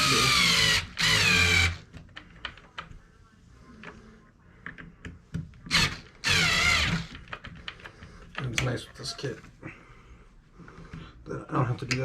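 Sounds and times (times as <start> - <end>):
power screwdriver whirring: 0.0 - 1.8, 5.7 - 7.2.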